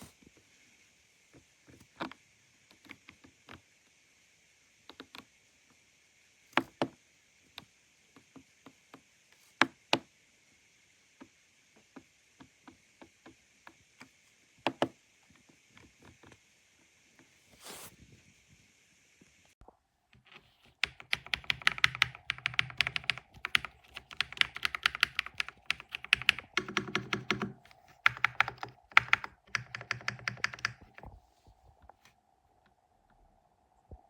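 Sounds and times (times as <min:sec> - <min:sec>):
mechanical keyboard clacks: 0:20.8 - 0:31.0.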